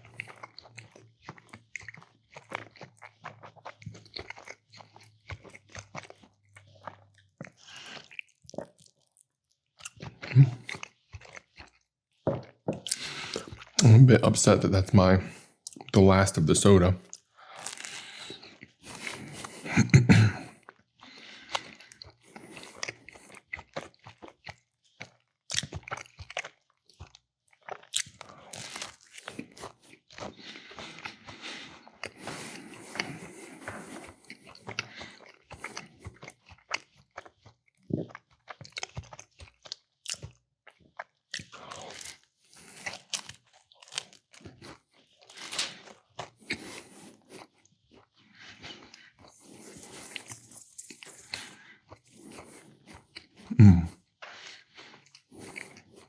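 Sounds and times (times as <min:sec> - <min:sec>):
person chewing and crunching food: 0:00.0 - 0:56.0
wet mouth sounds: 0:09.8 - 0:11.7, 0:12.4 - 0:14.6, 0:15.7 - 0:20.5, 0:48.5 - 0:54.0.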